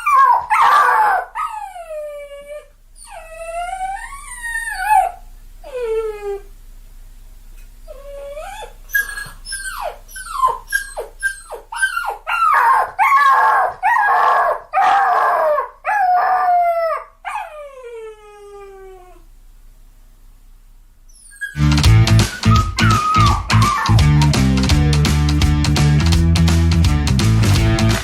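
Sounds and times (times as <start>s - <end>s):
puppies whining and crying: 0.0s - 6.4s, 7.9s - 19.2s, 21.1s - 24.4s.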